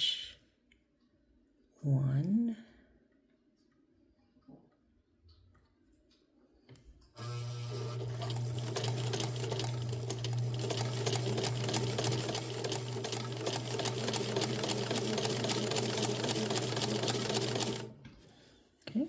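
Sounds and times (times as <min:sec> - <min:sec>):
sewing machine motor humming: 0:07.2 - 0:18.0.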